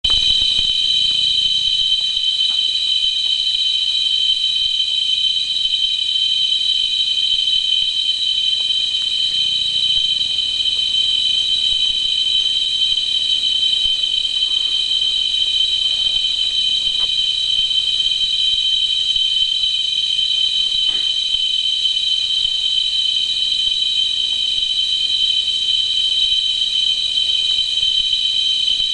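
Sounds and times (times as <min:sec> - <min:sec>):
cicadas droning: 0:00.0 - 0:28.9.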